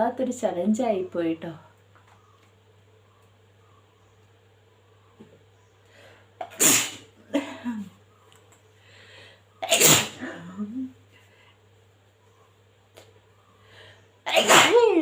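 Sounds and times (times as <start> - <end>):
woman sneezing: 6.5 - 7.1, 9.7 - 10.6, 14.3 - 15.0.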